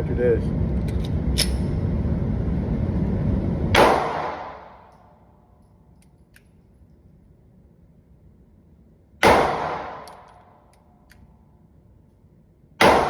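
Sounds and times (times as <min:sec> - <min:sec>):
low rumble: 0:00.0 - 0:06.0
pistol shot: 0:03.8 - 0:04.9, 0:09.2 - 0:10.4, 0:12.8 - 0:13.0.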